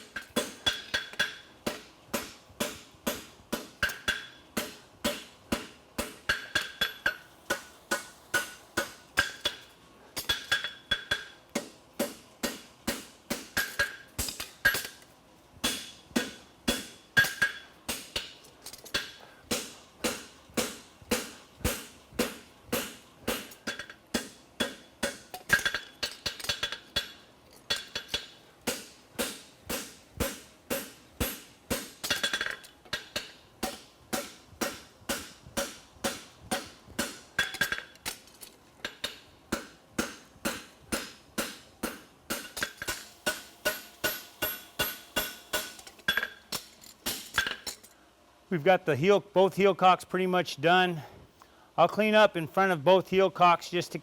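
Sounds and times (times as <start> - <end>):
hammer striking steel on anvil: 0.0 - 38.2, 38.8 - 47.9
anvil ringing: 39.0 - 46.4.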